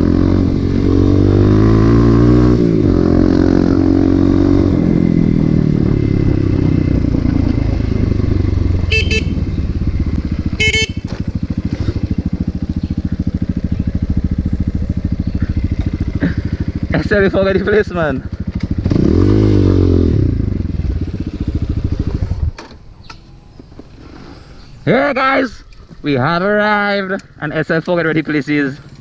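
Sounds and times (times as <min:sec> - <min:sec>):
motorcycle engine running: 0:00.0 - 0:22.6
short horn beeps: 0:08.8 - 0:09.6, 0:10.5 - 0:11.1.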